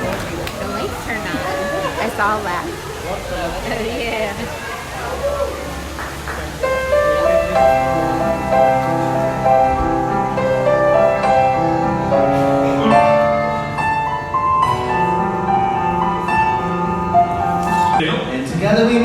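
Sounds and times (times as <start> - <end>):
instrumental music: 6.6 - 18.0.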